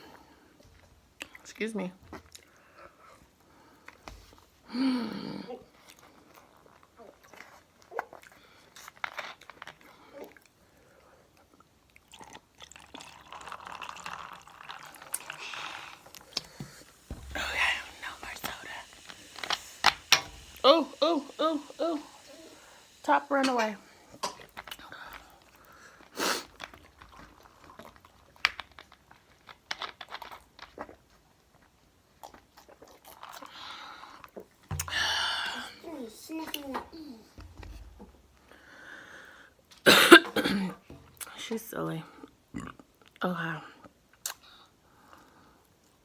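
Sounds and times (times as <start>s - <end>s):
chewing with wet smacks: 5.8s - 10.6s, 11.4s - 13.1s, 26.5s - 34.6s
person chewing: 11.5s - 17.3s, 24.3s - 34.6s
mouth clicks and smacks: 44.1s - 44.5s.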